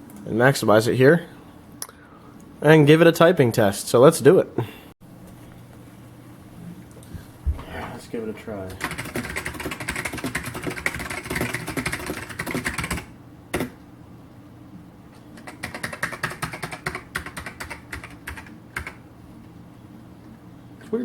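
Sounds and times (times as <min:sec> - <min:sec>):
fast typing on mechanical keyboard: 0:08.8 - 0:13.8, 0:15.4 - 0:19.0.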